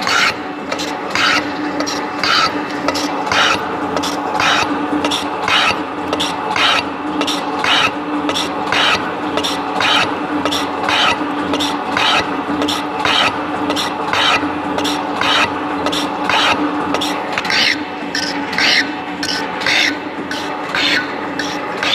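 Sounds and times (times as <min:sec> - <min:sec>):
metal shaper ram running: 0:00.0 - 0:21.9
motor hum: 0:00.0 - 0:21.9
scraping metal cutting noise: 0:00.0 - 0:21.9.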